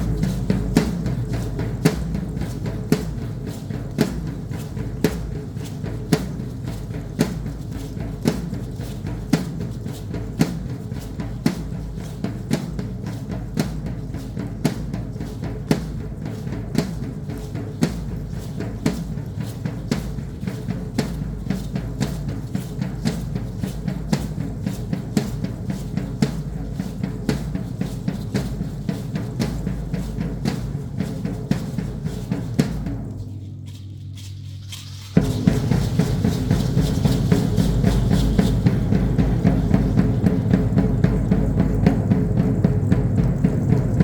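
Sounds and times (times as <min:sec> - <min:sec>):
continuous low rumble: 0:00.0 - 0:44.0
drum beating dance rhythm: 0:00.0 - 0:44.0.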